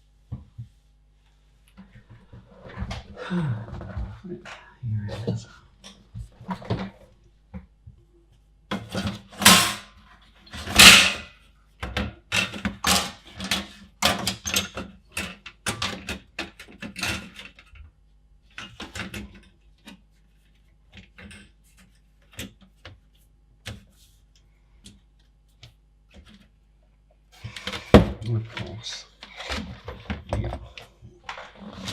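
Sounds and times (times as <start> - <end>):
metal plate clattering: 10.7 - 11.3.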